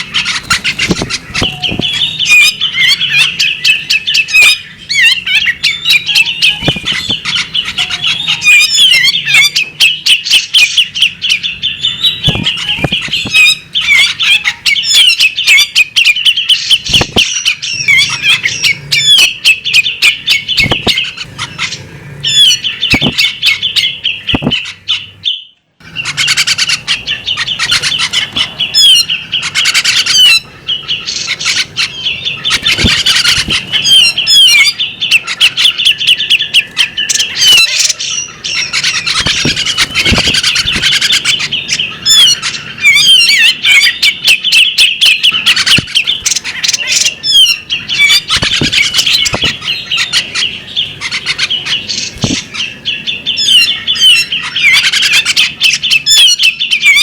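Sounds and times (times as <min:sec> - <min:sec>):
bird chattering with clicks: 0:00.0 - 0:02.2, 0:06.4 - 0:08.0, 0:12.2 - 0:13.5, 0:16.9 - 0:17.5, 0:20.6 - 0:21.8, 0:22.9 - 0:23.6, 0:24.3 - 0:24.8, 0:32.5 - 0:35.6, 0:38.6 - 0:41.5, 0:45.4 - 0:52.6.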